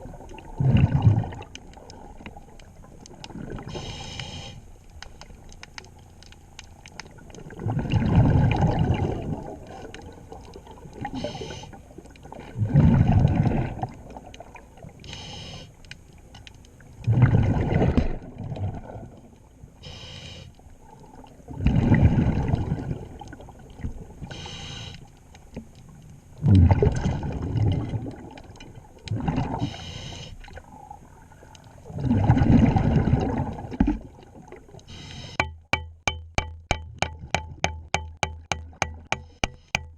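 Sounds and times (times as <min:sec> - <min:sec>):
bubbling exhaled air underwater: 0:00.0 - 0:04.6, 0:07.1 - 0:15.5, 0:16.9 - 0:19.3, 0:20.8 - 0:24.8, 0:26.4 - 0:35.4
regulator inhalation hiss: 0:03.7 - 0:04.7, 0:11.2 - 0:11.8, 0:15.1 - 0:15.8, 0:19.8 - 0:20.6, 0:24.3 - 0:25.1, 0:29.6 - 0:30.4, 0:34.9 - 0:35.4.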